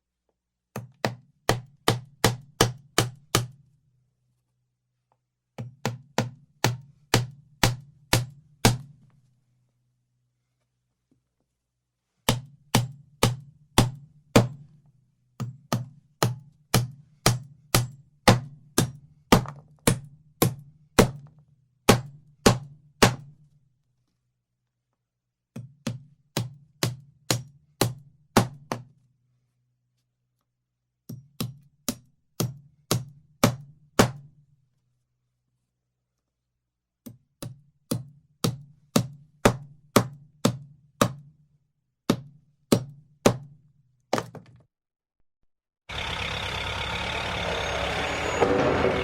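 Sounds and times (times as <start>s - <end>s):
hammer blows ringing: 46.9s - 49.0s.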